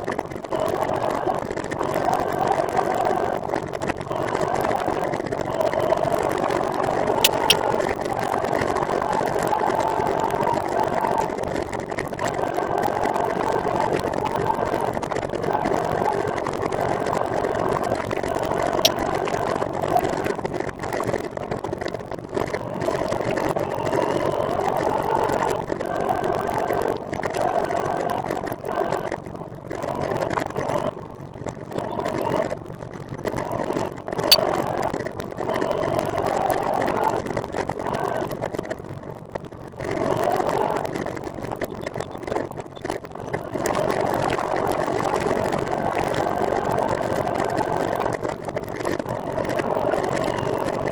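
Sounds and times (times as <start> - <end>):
sharp click: 7.2 - 7.6.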